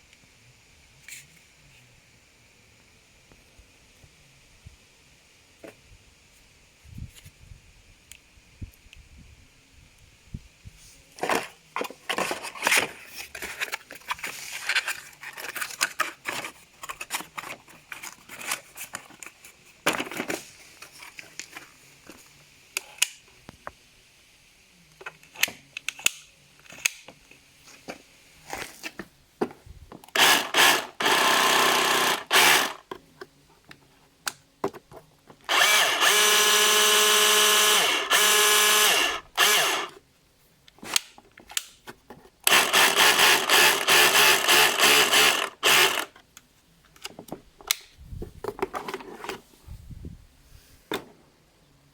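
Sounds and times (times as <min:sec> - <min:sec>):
rotary hammer running with whine: 0:30.2 - 0:32.8, 0:35.5 - 0:40.0, 0:42.5 - 0:46.1.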